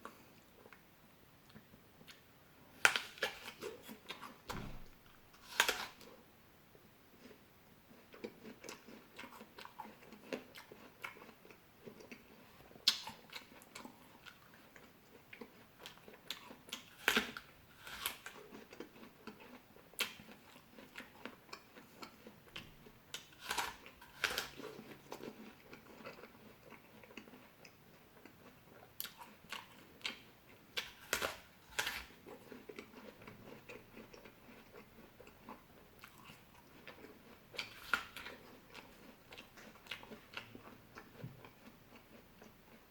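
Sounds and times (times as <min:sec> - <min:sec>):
person chewing fruit: 0:01.4 - 0:06.2, 0:07.1 - 0:42.9
crunchy bites: 0:05.3 - 0:06.1, 0:23.2 - 0:24.8.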